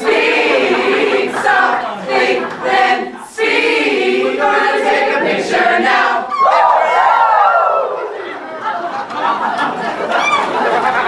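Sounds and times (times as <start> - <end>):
group of people singing: 0.0 - 6.9.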